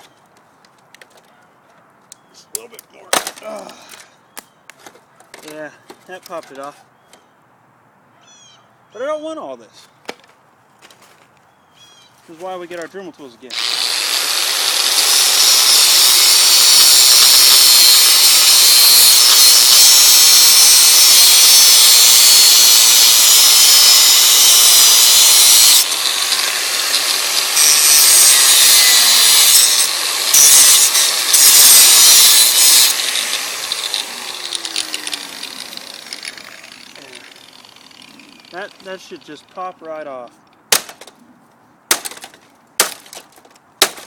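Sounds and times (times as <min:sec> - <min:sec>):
rotary tool cutting: 0:13.5 - 0:39.3.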